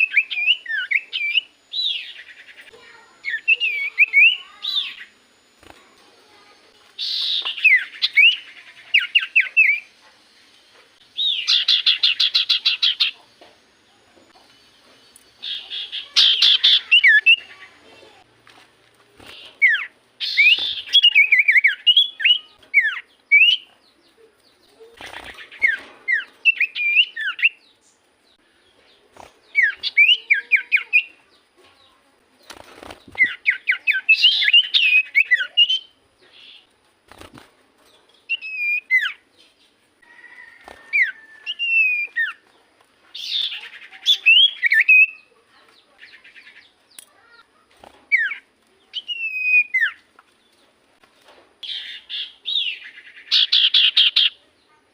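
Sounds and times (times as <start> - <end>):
bird singing whistled notes: 0.0 - 5.1, 11.1 - 13.2, 25.6 - 28.0, 38.3 - 39.2, 41.0 - 42.4, 43.2 - 45.3, 48.1 - 50.0.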